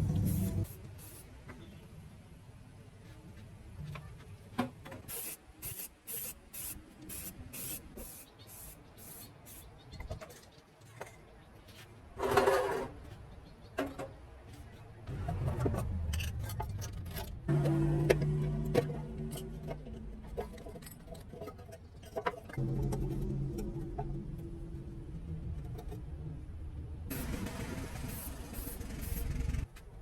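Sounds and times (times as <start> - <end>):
low hum: 15.1 - 21.2, 22.6 - 29.7.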